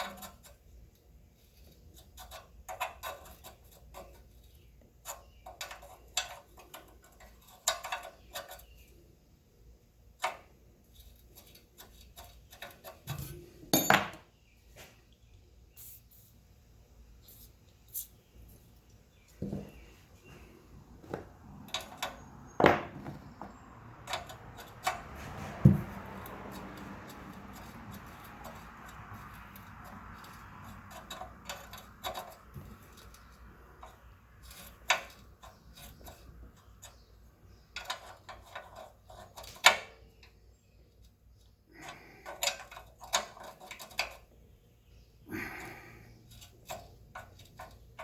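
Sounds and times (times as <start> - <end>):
metal tools clinking and knocking: 11.4 - 14.3.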